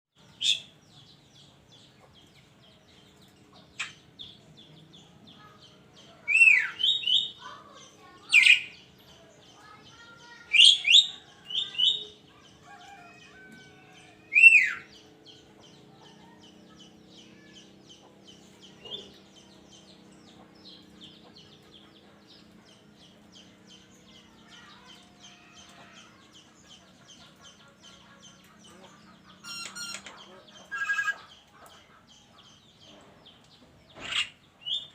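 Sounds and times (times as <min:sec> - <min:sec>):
bird calls sweeping downward: 0:29.4 - 0:31.3.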